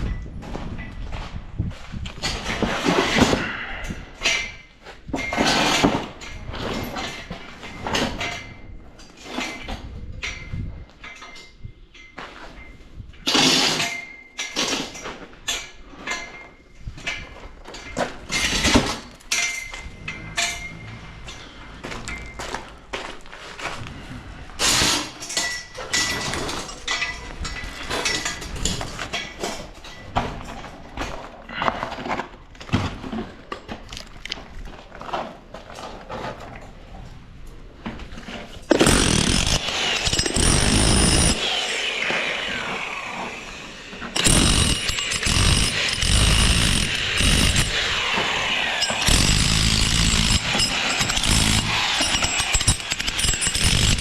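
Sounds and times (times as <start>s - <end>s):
power tool running loudly: 38.7s - 54.0s.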